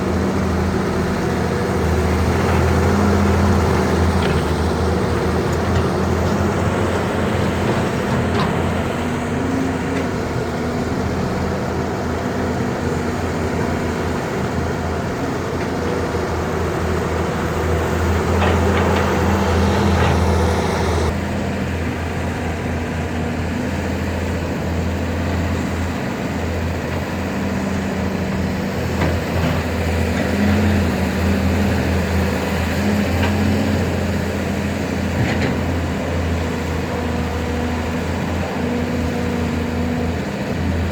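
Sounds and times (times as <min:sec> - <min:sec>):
excavator engines under load: 0:00.0 - 0:40.9.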